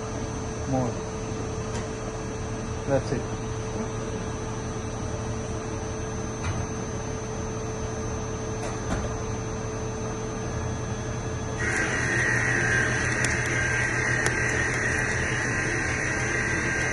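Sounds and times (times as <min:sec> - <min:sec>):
high-pitched whine: 0:05.8 - 0:16.9
lathe motor hum: 0:11.6 - 0:16.9.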